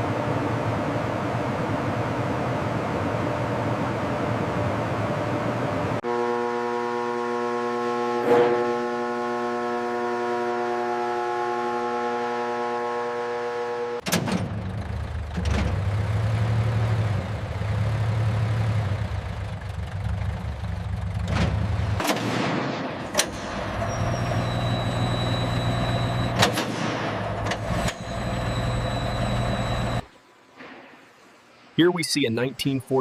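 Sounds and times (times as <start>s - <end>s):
heavy vehicle engine droning: 0.0s - 22.0s, 22.8s - 30.1s
sharp bangs: 21.4s - 28.8s.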